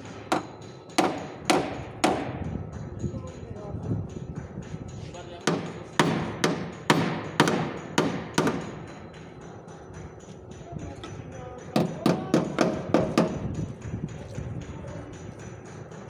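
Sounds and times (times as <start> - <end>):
hammer striking sheet metal: 0.0 - 2.4, 5.4 - 9.3, 11.8 - 13.5.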